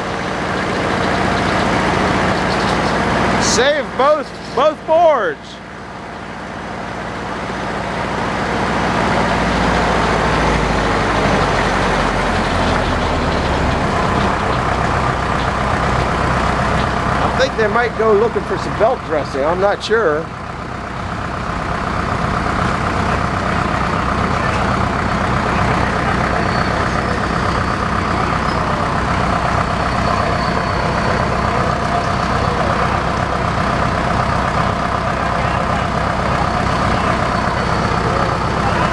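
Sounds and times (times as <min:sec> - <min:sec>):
circular sawmill running: 0:00.0 - 0:38.9
tractor engine running: 0:00.0 - 0:38.9.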